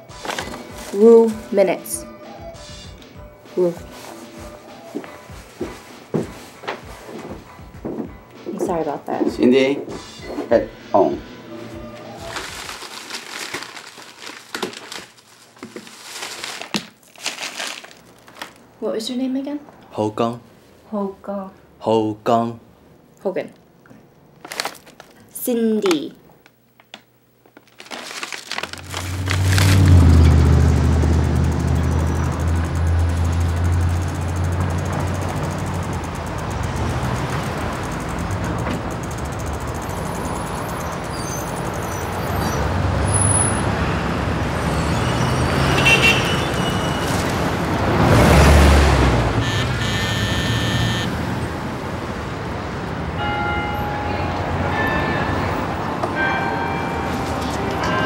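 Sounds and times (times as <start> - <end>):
street traffic noise: 0.0 - 13.6, 28.7 - 58.0
vehicle engine rumbling: 28.4 - 53.2
short pitched tones: 49.4 - 51.2.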